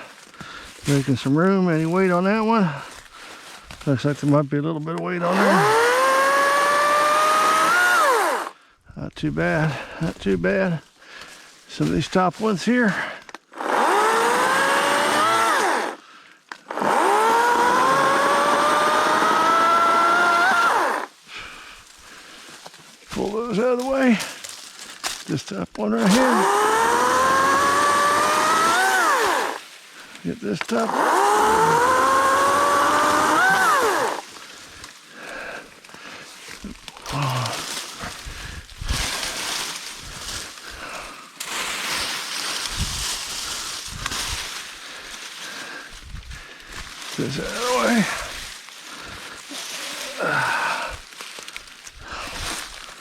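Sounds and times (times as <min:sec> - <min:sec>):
branches rustling and crackling: 0:00.0 - 0:08.5, 0:09.2 - 0:53.0
electric chainsaw motor whine: 0:05.2 - 0:08.5, 0:13.6 - 0:16.0, 0:16.7 - 0:21.1, 0:26.0 - 0:29.6, 0:30.7 - 0:34.4, 0:47.2 - 0:48.3.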